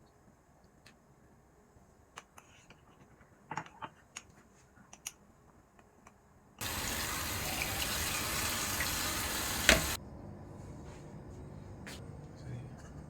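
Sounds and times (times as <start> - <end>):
water tap running: 6.6 - 10.0.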